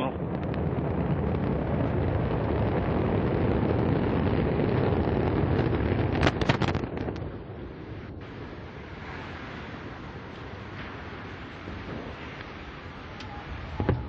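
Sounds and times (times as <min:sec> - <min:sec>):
sharp cracks: 0:00.0 - 0:07.5
rocket engine roar: 0:00.0 - 0:14.0.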